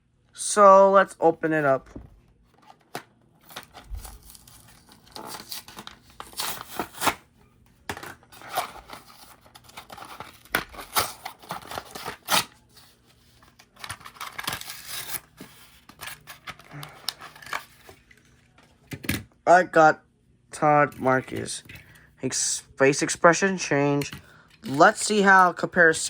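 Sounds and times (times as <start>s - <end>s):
packaging ripping and crinkling: 3.4s - 7.2s, 8.3s - 12.6s, 13.4s - 18.1s.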